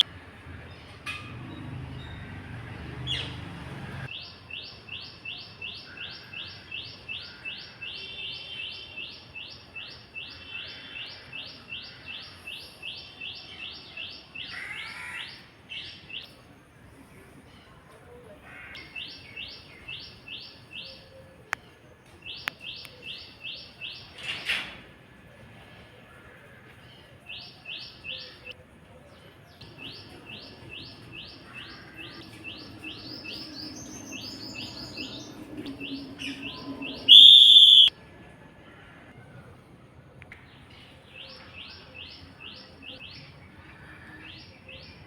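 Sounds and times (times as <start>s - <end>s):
bird chirping: 29.6s - 37.9s.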